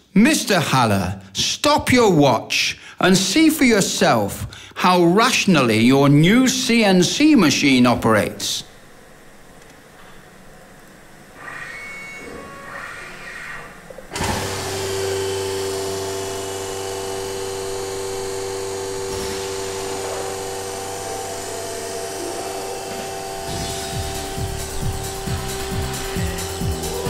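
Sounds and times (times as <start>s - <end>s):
light machine sounds: 9.3s - 27.0s
router spindle whining: 11.2s - 27.0s.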